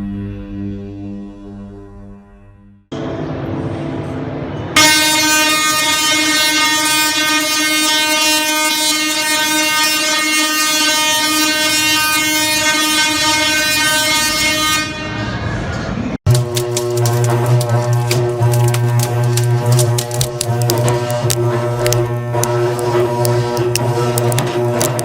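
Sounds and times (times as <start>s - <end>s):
buzzy horn blast: 2.9s - 15.5s, 16.4s - 25.0s
rumbling noise: 15.0s - 25.0s.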